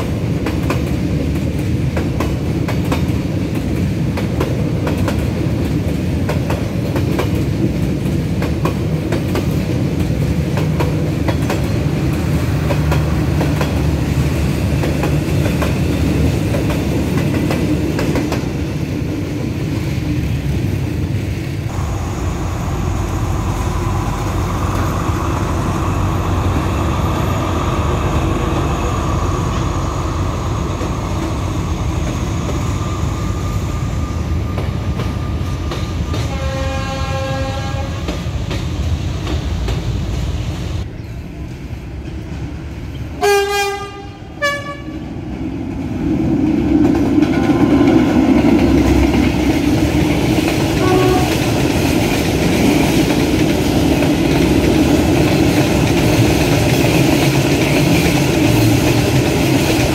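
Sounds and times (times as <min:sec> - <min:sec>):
train wheels clattering over rail joints: 0:00.0 - 0:20.1, 0:46.4 - 0:59.9.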